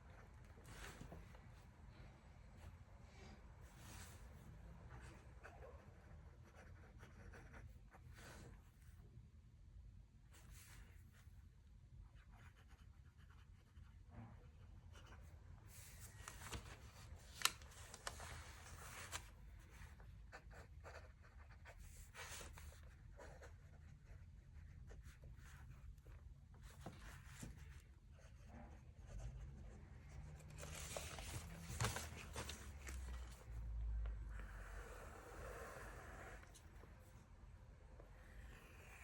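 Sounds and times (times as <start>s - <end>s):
pen scratching on paper: 5.4s - 7.7s, 12.2s - 15.2s, 20.3s - 25.8s, 26.8s - 31.0s.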